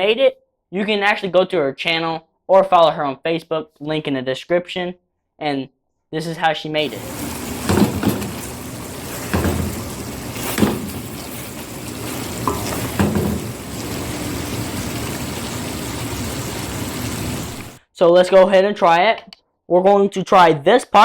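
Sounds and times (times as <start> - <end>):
food sizzling in a hot pan: 6.9 - 17.8
utensil clattering in pan: 6.9 - 17.8.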